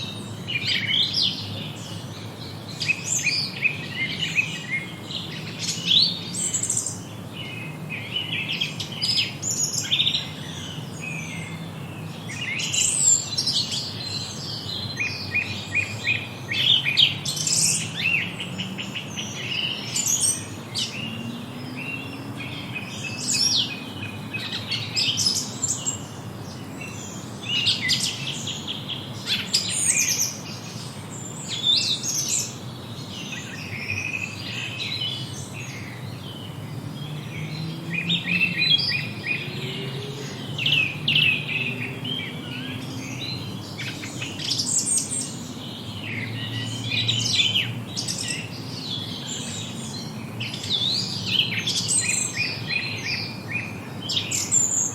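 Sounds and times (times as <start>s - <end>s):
songbirds singing: 0.0s - 54.9s.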